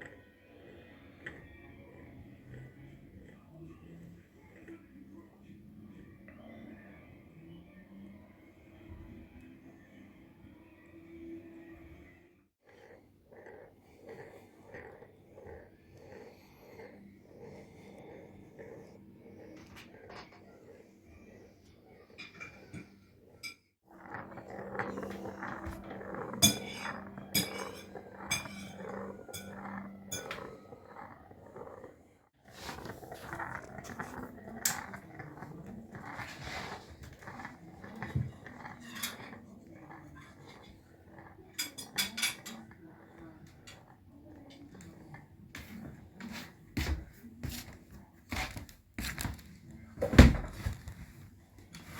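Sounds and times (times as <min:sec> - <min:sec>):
glass marble rattling in dish: 0:24.2 - 0:31.1.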